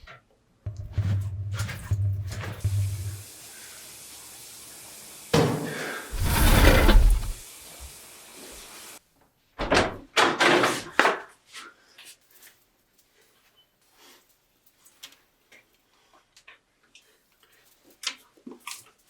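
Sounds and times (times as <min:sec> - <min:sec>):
deep rumbling: 0:06.1 - 0:07.4.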